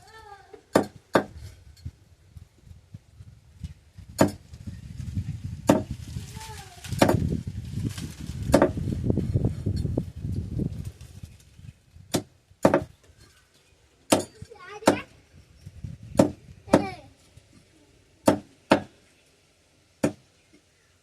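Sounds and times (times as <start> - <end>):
low rumbling handling noise: 1.3 - 12.1.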